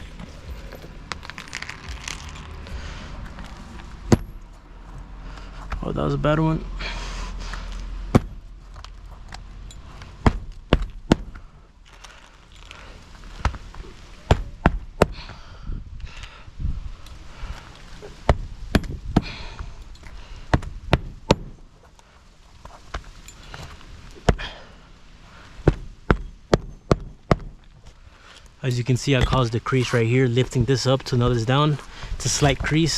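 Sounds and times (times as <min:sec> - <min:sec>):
shingles rustling: 0:00.0 - 0:04.3, 0:08.7 - 0:15.3.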